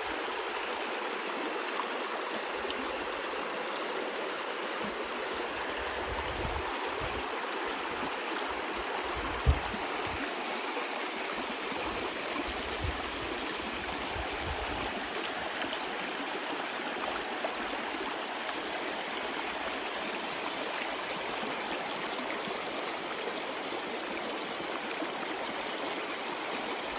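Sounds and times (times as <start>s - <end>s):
water rushing over rocks: 4.4s - 21.3s
low thumps: 9.2s - 10.2s.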